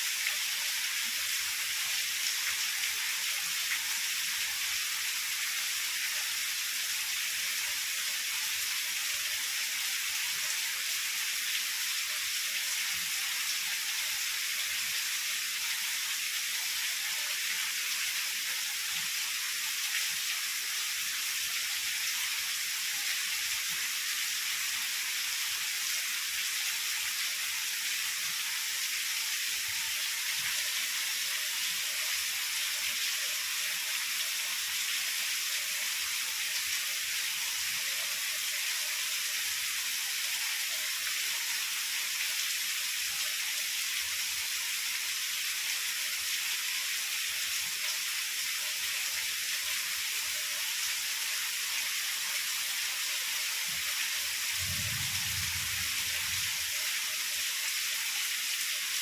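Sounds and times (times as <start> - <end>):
heavy rain falling: 54.5 - 57.0.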